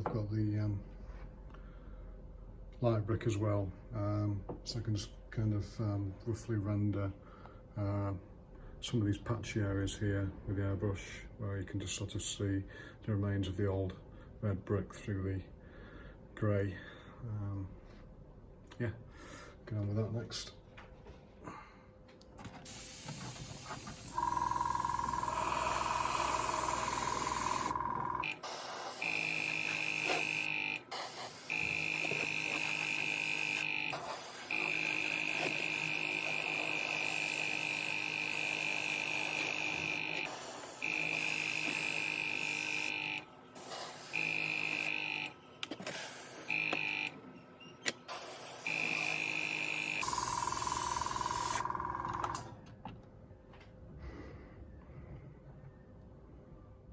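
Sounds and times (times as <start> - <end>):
air hissing through airbrush: 22.7 - 24.2, 25.0 - 32.0, 33.6 - 35.6, 40.2 - 41.2, 43.6 - 44.4, 45.9 - 46.5, 48.1 - 49.1
compressor motor whining: 22.7 - 47.2, 47.8 - 52.4.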